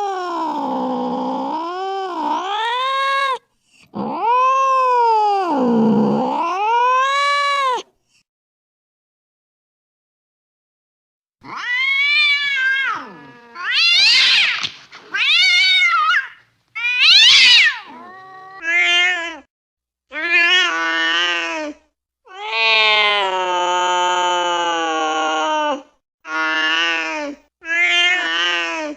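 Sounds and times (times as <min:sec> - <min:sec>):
cat yowling: 0:00.0 - 0:03.4, 0:04.0 - 0:07.8, 0:11.4 - 0:19.5, 0:22.3 - 0:28.7.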